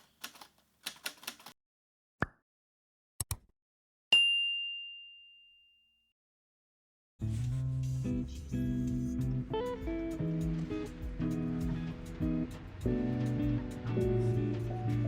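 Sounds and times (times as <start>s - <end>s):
typewriter keys clacking: 0.0s - 1.5s
guitar music: 7.2s - 15.0s.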